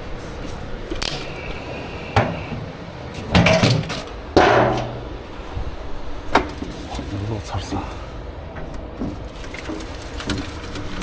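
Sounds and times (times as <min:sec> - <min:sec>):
sharp knocks and clatter: 0:03.3 - 0:05.2
heavy bang: 0:03.3 - 0:05.7.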